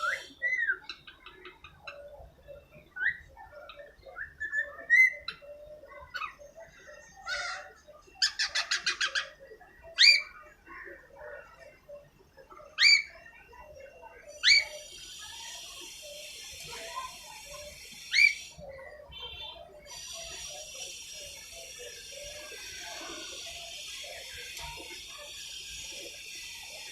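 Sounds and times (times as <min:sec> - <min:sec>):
steady hiss: 0:14.9 - 0:18.7, 0:19.9 - 0:26.9.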